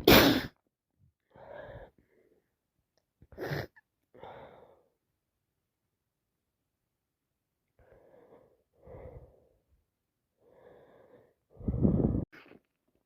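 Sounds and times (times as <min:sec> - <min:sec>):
woman sneezing: 0:00.0 - 0:00.6
wheezy breath: 0:10.4 - 0:12.6.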